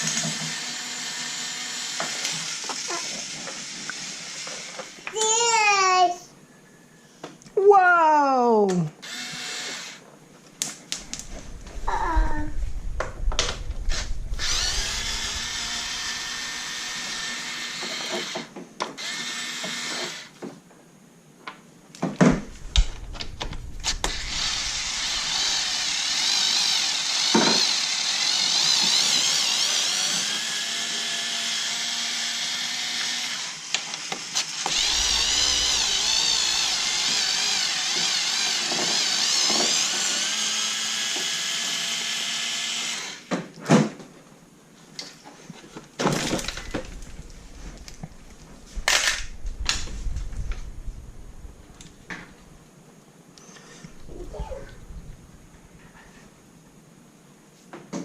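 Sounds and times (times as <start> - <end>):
cordless screwdriver motor whine: 0.0 - 5.0, 9.0 - 10.0, 13.9 - 20.3, 22.7 - 43.3.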